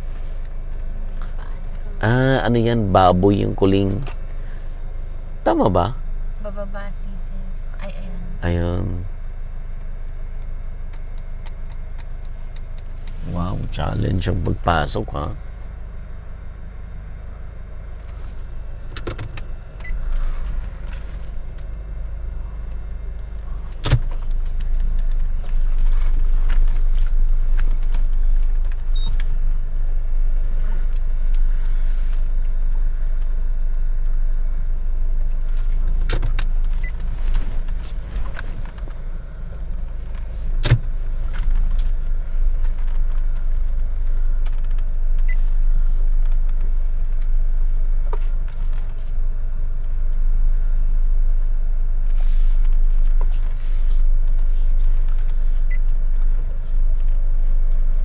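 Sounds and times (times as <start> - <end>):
car engine and road rumble: 0.0 - 58.0.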